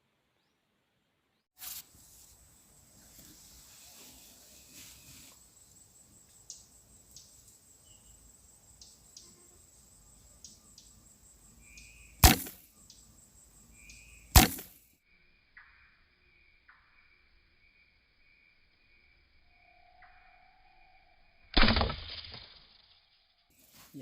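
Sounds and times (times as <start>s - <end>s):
faint high whine: 7.2s - 21.5s
loud sharp noises: 12.2s - 12.7s, 14.3s - 14.8s.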